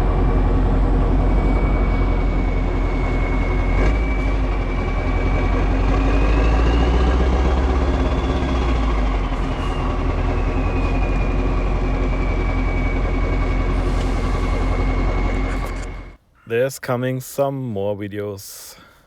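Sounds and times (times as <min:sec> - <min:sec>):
truck diesel engine running: 0:00.0 - 0:16.2
turbo whistle: 0:01.2 - 0:07.0.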